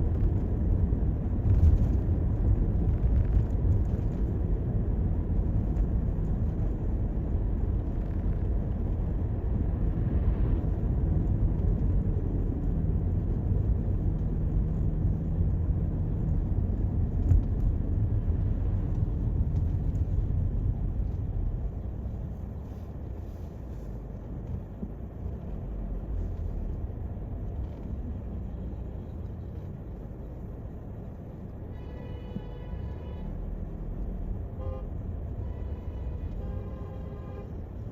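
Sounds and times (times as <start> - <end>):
car tyres and engine rumble: 0.0 - 37.9.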